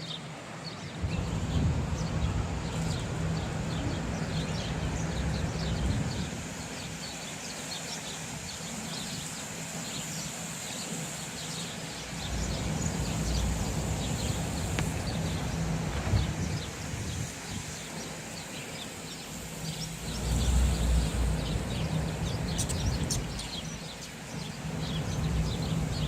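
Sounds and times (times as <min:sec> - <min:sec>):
city traffic rumble: 0:00.0 - 0:26.0
sparrows chirping: 0:00.0 - 0:26.0.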